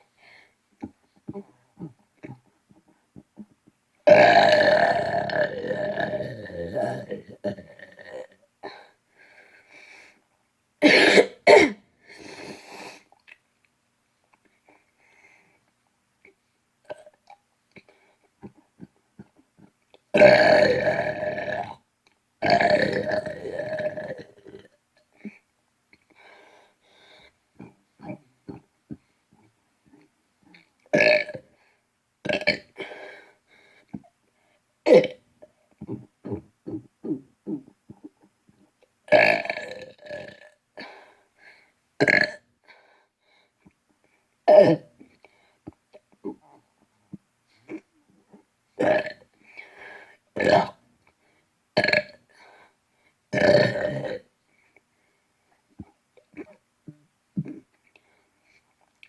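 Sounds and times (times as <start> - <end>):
long loud burps: 4.0 - 8.4, 20.1 - 21.8, 22.4 - 24.7, 30.9 - 31.5, 32.2 - 32.8, 34.9 - 35.2, 39.1 - 40.6, 42.0 - 42.5, 44.5 - 44.9, 48.8 - 49.2, 50.4 - 50.8, 51.8 - 52.2, 53.3 - 54.3.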